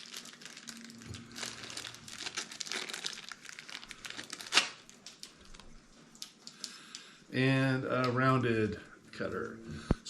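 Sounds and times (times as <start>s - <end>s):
packaging crinkling and rustling: 0.0s - 7.0s.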